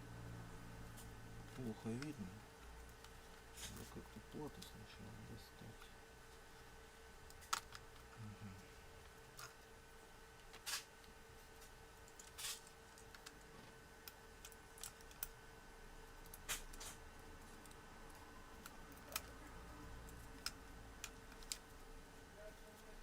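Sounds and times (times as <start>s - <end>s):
faint steady hum: 0.0s - 23.0s
plastic parts and tools clicking: 20.1s - 21.8s.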